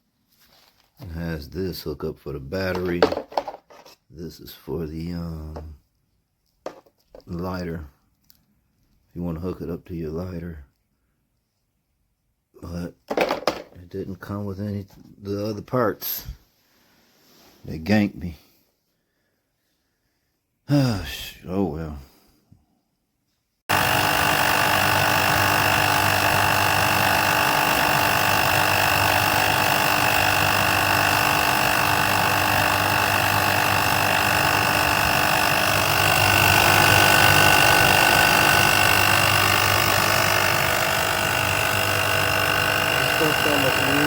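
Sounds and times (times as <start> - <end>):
electric pump whining: 13.1 - 13.8, 23.7 - 44.0.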